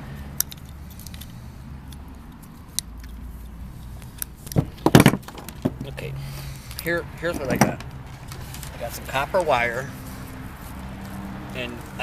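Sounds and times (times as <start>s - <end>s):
small metal parts clicking: 0.3s - 5.7s.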